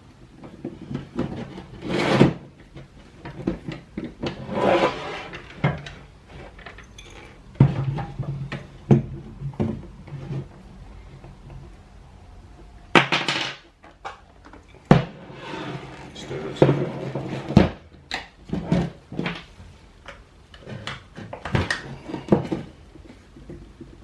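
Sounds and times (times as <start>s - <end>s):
metal scraping: 4.2s - 8.5s, 14.6s - 17.8s
metal tool clicks and knocks: 6.6s - 7.4s.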